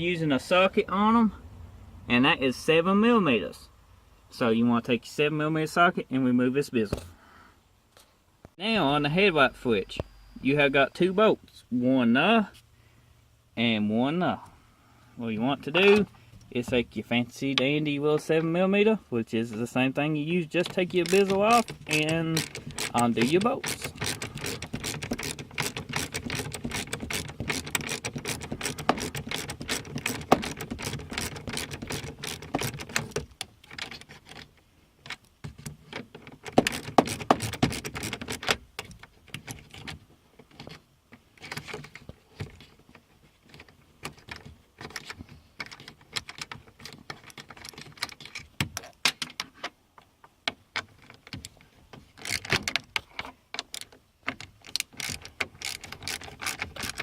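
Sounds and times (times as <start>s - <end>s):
ratchet clicking: 21.0s - 33.2s, 54.6s - 57.0s.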